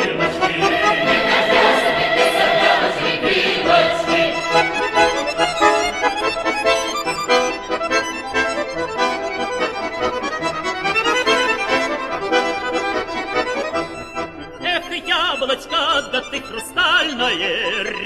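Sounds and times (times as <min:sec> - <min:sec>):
accordion playing lively folk dance: 0:00.0 - 0:18.0.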